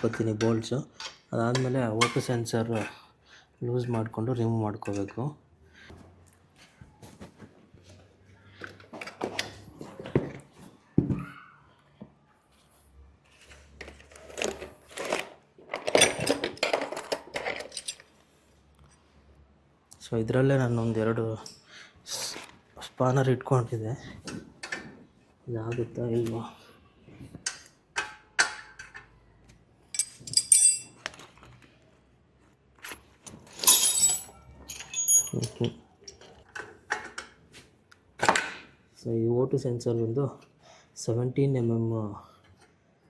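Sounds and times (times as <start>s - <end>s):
metal hand tools clinking: 17.6s - 18.0s, 30.0s - 31.0s, 33.5s - 35.7s.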